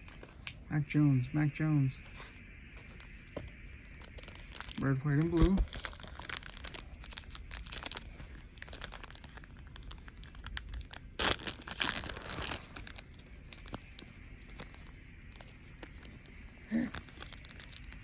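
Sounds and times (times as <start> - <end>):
plastic wrapper crinkling and tearing: 3.7 - 18.0.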